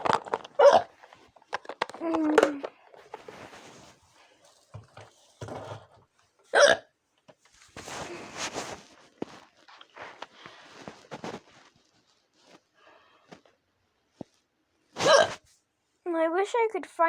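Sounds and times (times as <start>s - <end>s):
soft rustling: 1.0s - 6.3s, 7.3s - 15.7s
girl hiccuping: 6.6s - 6.9s, 15.0s - 15.4s.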